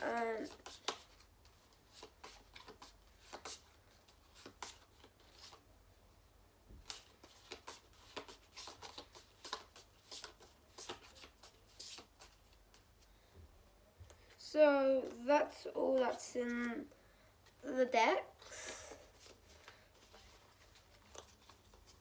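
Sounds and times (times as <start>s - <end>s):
trading cards clicking and rustling: 6.8s - 12.9s.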